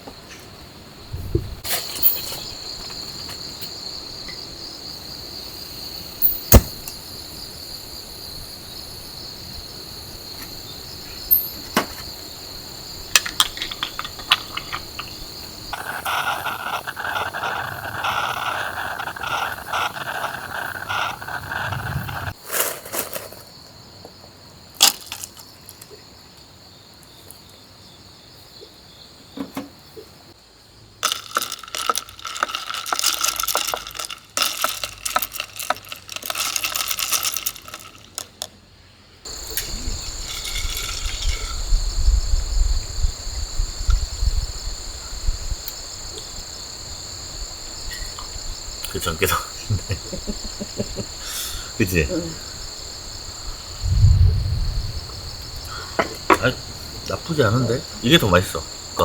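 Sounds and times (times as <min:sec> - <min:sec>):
insects trilling: 0:00.1 - 0:59.0
hissing rush: 0:13.9 - 0:22.4.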